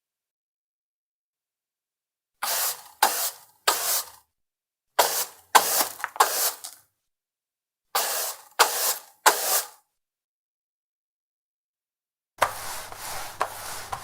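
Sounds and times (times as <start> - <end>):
mop swishing over wooden floor: 5.0 - 6.8, 8.0 - 9.8, 12.4 - 14.0.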